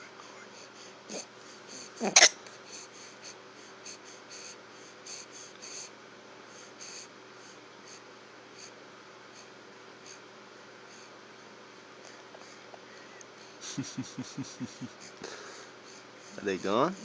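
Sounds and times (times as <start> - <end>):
person hiccuping: 2.0 - 2.4.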